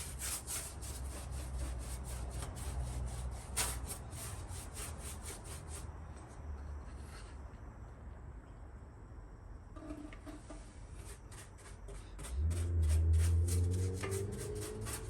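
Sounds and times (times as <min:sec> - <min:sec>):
brush scrubbing sheet metal: 0:00.0 - 0:05.9, 0:11.0 - 0:15.0.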